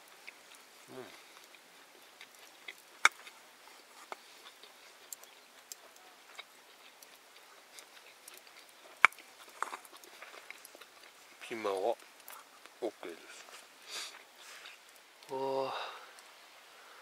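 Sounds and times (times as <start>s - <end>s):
faint steady hiss: 0.0s - 17.0s
sharp clicks and pops: 2.3s - 3.4s.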